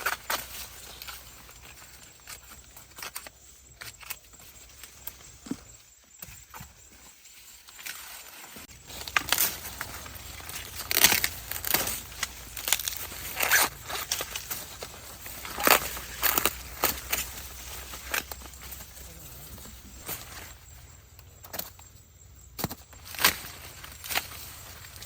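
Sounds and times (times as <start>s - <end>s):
dry corn leaves rustling: 0.0s - 20.9s, 22.9s - 25.0s
corn stalks snapping: 8.9s - 19.0s, 22.6s - 25.0s.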